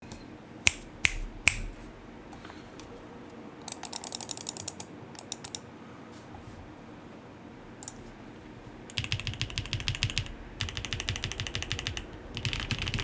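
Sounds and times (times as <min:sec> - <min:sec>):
mechanical keyboard typing: 0:03.7 - 0:05.6, 0:08.9 - 0:13.0.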